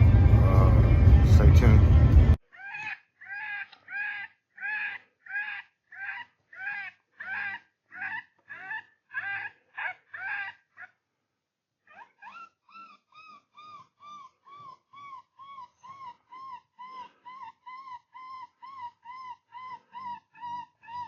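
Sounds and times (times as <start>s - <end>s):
animal distress cry from predator call: 2.5s - 11.0s.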